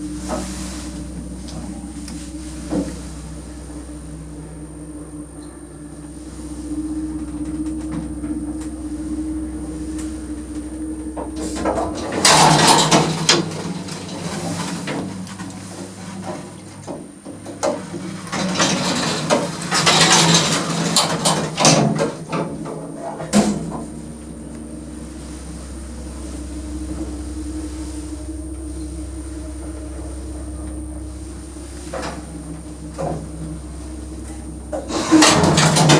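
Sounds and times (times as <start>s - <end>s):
lift doors clattering: 0.0s - 35.9s
lift motor humming: 0.0s - 35.9s.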